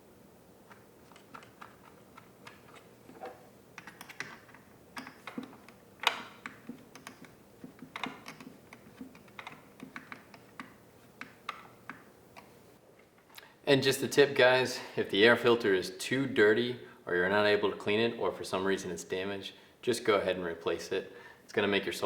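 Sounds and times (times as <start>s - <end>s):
plastic parts clicking and knocking: 0.7s - 12.5s.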